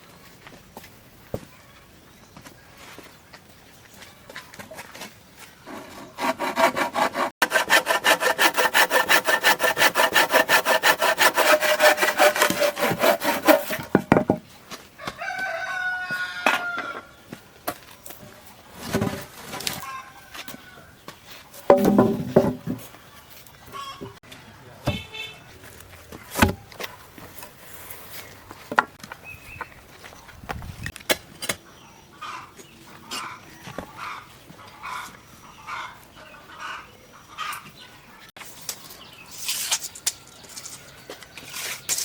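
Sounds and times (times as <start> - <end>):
handsaw cutting wood: 5.7 - 14.0
wood knocks: 13.4 - 14.4, 21.7 - 22.8.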